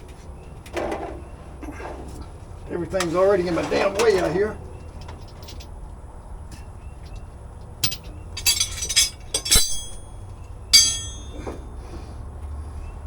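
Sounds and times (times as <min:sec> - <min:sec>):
metal tools clinking and clanking: 0:07.8 - 0:11.6.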